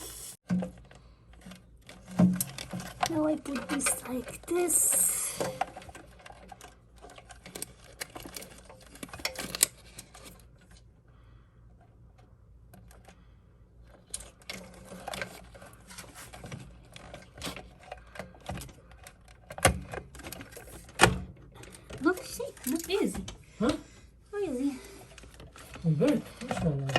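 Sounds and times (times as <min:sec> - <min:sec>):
small parts clicking and tapping: 0:00.5 - 0:10.9, 0:11.7 - 0:23.8.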